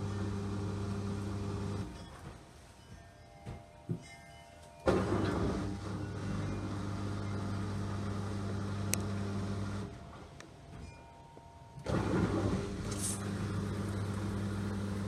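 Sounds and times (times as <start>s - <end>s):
washing machine motor humming: 0.0s - 1.9s, 4.9s - 9.9s, 11.8s - 15.0s.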